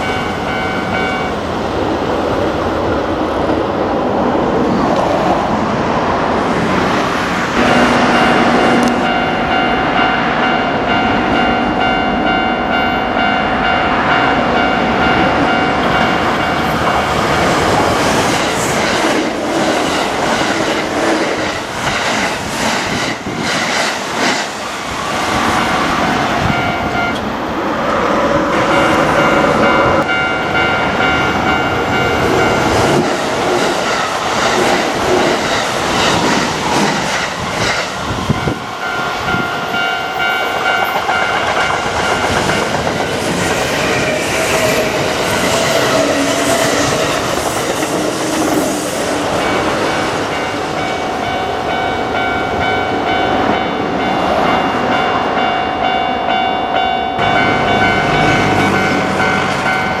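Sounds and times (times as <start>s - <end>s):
crossing warning bell ringing: 0.0s - 1.8s, 7.6s - 18.1s, 25.5s - 27.5s, 28.5s - 34.2s, 37.4s - 48.2s, 49.0s - 60.0s
train wheels clicking over rail joints: 40.4s - 48.7s.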